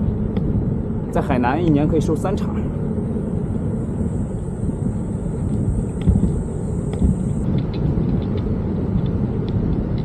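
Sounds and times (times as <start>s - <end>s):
thin high whine: 0.0s - 7.7s
wind buffeting microphone: 0.0s - 10.0s.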